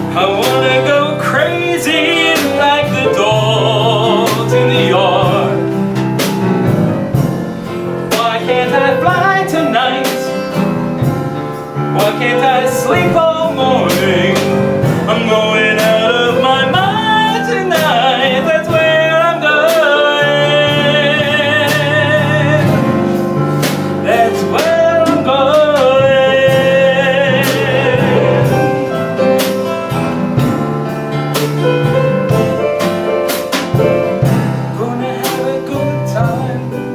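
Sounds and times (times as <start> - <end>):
drum beats: 0.0 - 36.9
live band playing a song: 0.0 - 36.9
singers holding long notes: 11.9 - 29.4.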